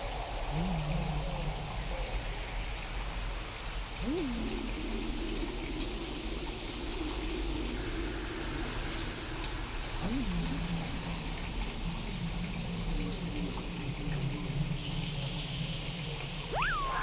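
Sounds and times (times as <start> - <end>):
steady rain hiss: 0.0 - 17.0
low swooping tone: 16.5 - 17.0
wavering high tone: 16.5 - 17.0.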